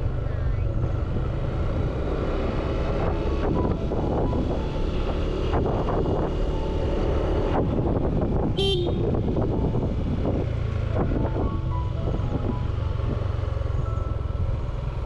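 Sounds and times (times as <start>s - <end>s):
wind and traffic rumble: 0.0s - 15.0s
vehicle horn toot: 8.6s - 9.2s.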